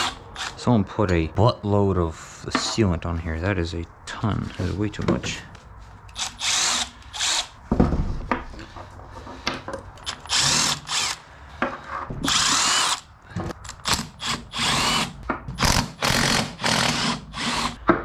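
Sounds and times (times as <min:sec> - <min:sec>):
power drill bursts: 0:06.2 - 0:07.5, 0:10.0 - 0:11.2, 0:12.3 - 0:13.0, 0:13.8 - 0:17.8.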